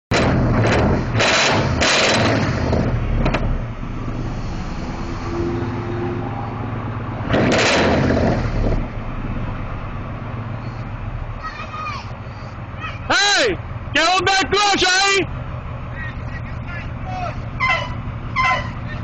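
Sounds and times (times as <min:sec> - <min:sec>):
sharp exhaust crack: 0:00.1 - 0:06.0, 0:07.2 - 0:09.1
car engine revving: 0:00.1 - 0:11.1.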